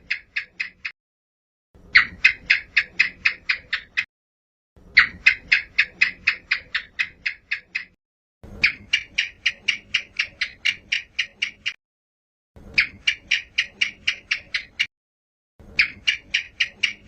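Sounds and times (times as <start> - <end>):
gecko chirping: 0.0 - 0.9, 1.9 - 4.1, 4.9 - 8.0, 8.6 - 11.8, 12.8 - 14.9, 15.8 - 17.0.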